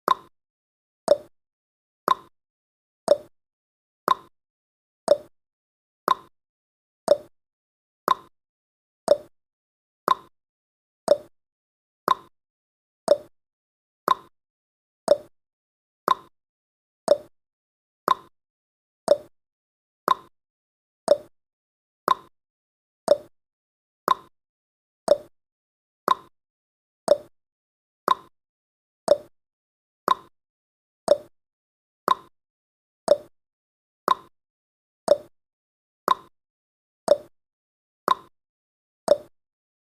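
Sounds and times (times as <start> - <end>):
clock ticking: 29.1 - 29.3, 39.1 - 39.3.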